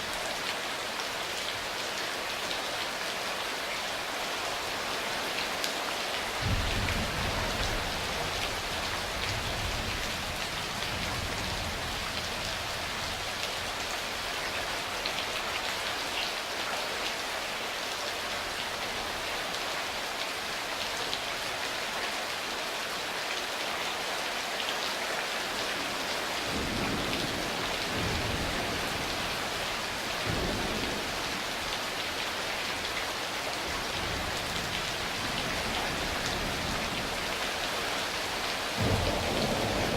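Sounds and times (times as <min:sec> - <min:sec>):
heavy rain falling: 0:00.0 - 0:39.9
distant thunder rumbling: 0:06.4 - 0:09.8, 0:38.8 - 0:39.9.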